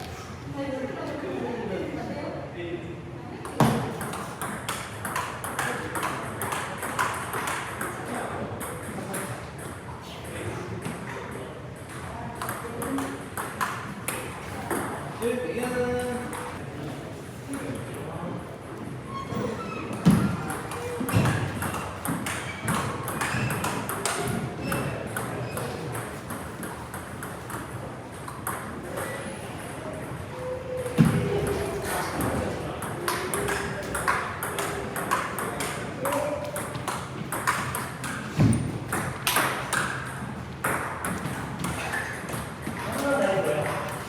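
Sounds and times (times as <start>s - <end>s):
table tennis balls clicking: 3.4s - 9.8s, 11.9s - 15.0s, 20.0s - 29.3s, 30.9s - 43.0s.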